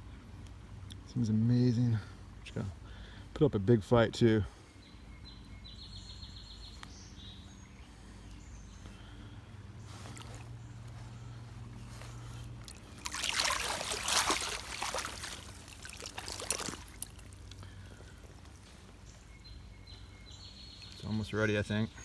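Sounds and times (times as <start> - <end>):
creek water trickling: 9.8 - 21.6
water splashing and sloshing: 9.9 - 10.6, 12.4 - 18.2.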